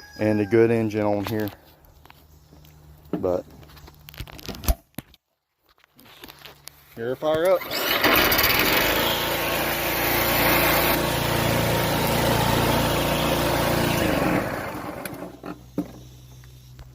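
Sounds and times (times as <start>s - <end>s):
string trimmer engine running: 7.5s - 15.6s.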